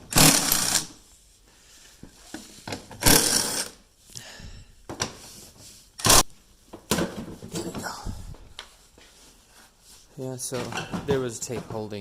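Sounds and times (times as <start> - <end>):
power tool mechanical bursts: 0.1 - 0.9, 3.0 - 3.7, 6.0 - 6.3.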